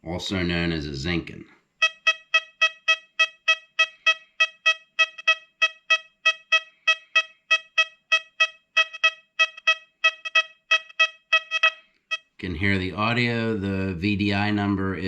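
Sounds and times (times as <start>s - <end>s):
metal detector short beeps: 1.8s - 12.3s.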